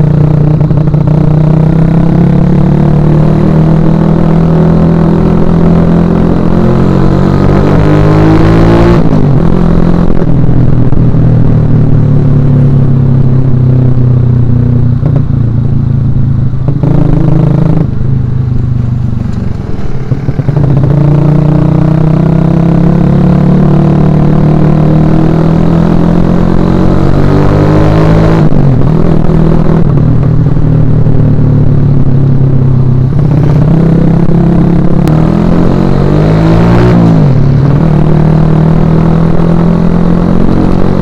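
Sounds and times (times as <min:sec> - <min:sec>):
motorcycle engine revving: 0:00.0 - 0:41.0.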